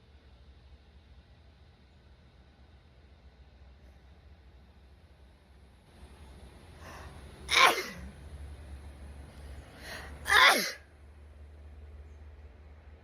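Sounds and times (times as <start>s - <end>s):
woman sneezing: 7.5s - 8.0s, 10.3s - 10.8s
breath in: 9.8s - 10.2s.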